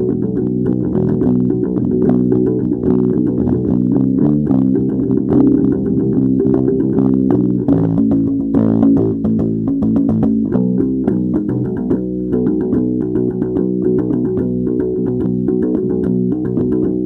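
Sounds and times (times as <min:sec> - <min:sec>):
bass guitar: 0:00.0 - 0:17.0
plucked guitar: 0:00.0 - 0:17.0.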